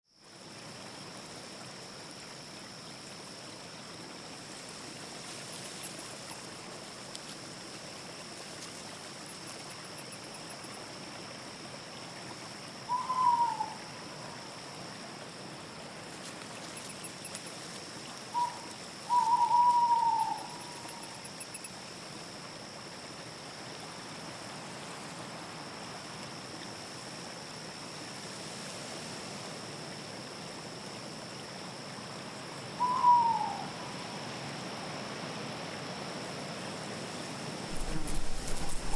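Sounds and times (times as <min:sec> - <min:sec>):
constant high tone: 0:05.5 - 0:06.4, 0:09.3 - 0:10.8, 0:16.8 - 0:17.5, 0:19.2 - 0:21.7
very high chirping trills: 0:05.6 - 0:06.4, 0:09.3 - 0:10.8, 0:16.8 - 0:17.5, 0:20.2 - 0:21.7
owl hooting: 0:12.9 - 0:13.8, 0:18.4 - 0:21.7, 0:32.8 - 0:33.9.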